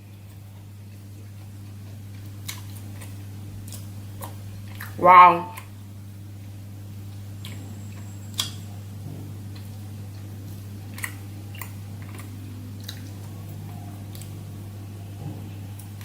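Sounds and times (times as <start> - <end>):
steady low hum: 0.0 - 16.0
mouth smacks while eating: 0.3 - 5.7, 7.1 - 8.6, 9.5 - 13.4, 14.0 - 14.4.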